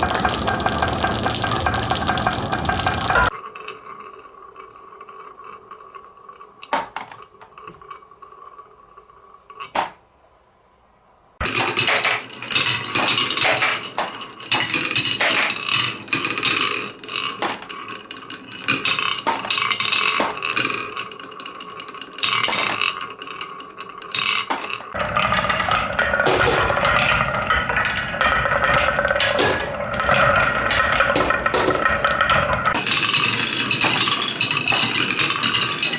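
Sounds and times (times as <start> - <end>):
marbles clattering down a run: 0.0 - 10.0, 11.4 - 35.9.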